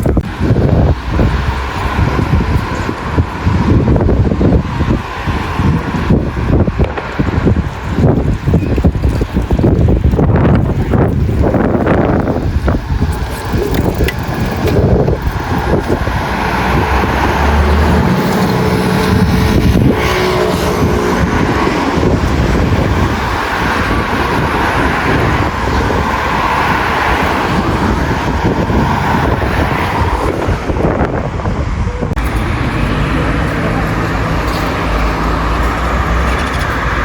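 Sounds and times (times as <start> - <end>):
street traffic passing: 0.0 - 37.0
wind buffeting microphone: 0.0 - 37.0.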